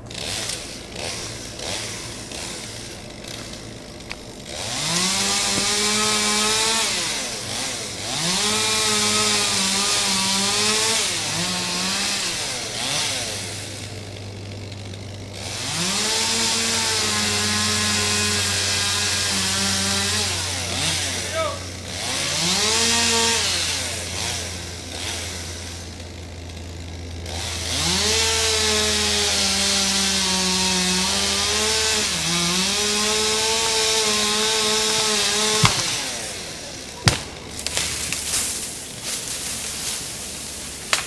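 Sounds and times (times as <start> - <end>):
chainsaw revving and idling: 0.0 - 41.0.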